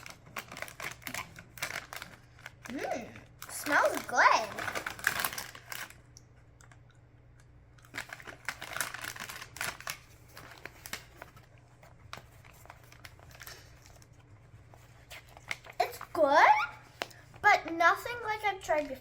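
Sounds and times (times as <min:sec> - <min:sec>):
crunching crisp snack: 0:00.0 - 0:11.2.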